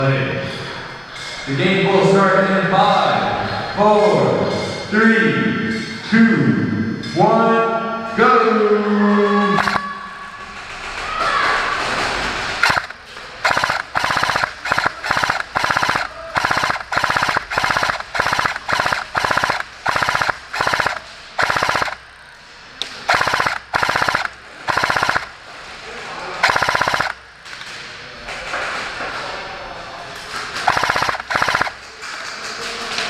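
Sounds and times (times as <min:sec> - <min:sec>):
airsoft gun firing bursts: 0:09.5 - 0:10.0, 0:12.6 - 0:22.2, 0:23.0 - 0:25.4, 0:26.4 - 0:27.6, 0:30.6 - 0:32.1.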